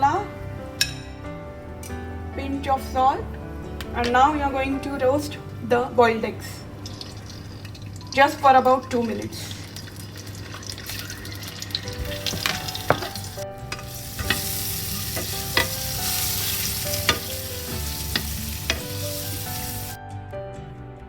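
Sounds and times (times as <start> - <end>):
eggs sizzling in a pan: 6.8 - 20.0
utensil knocking against pan: 12.0 - 14.5, 17.0 - 17.4.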